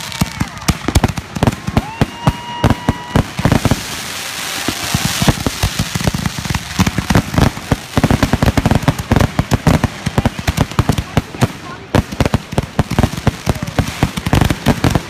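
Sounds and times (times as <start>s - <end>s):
firework bangs: 0.0s - 15.0s
firework crackling hiss: 0.0s - 15.0s
firework whistles: 1.8s - 5.8s.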